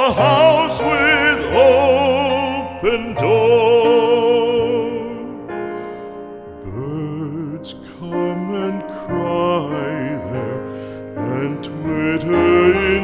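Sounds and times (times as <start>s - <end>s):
slow tender background music: 0.0s - 13.0s.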